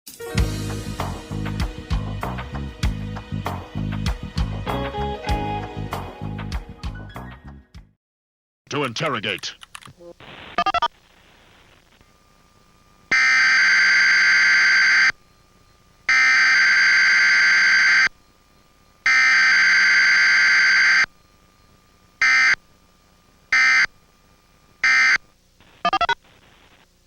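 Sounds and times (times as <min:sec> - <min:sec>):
harsh electronic alarm blasts: 0:13.1 - 0:15.2, 0:16.1 - 0:18.2, 0:19.0 - 0:21.1, 0:22.2 - 0:22.6, 0:23.5 - 0:23.9, 0:24.8 - 0:26.2.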